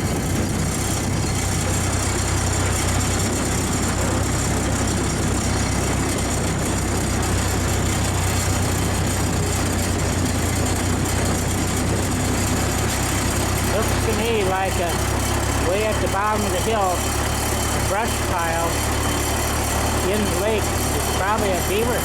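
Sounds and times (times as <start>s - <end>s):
tractor engine running steadily: 0.0s - 22.0s.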